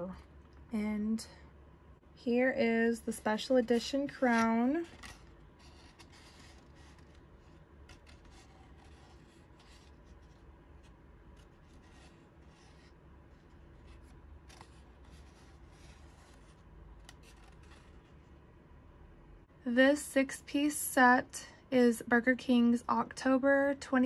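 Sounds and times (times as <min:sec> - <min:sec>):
paper crown rustling: 0:03.5 - 0:18.2.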